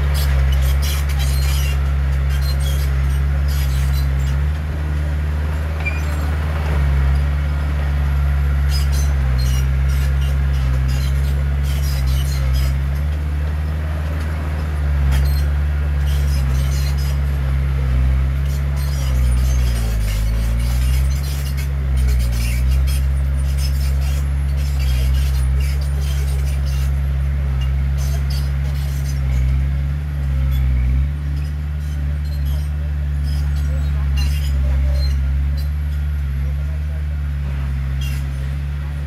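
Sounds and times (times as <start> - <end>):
heavy diesel engine under load: 0.0 - 39.0.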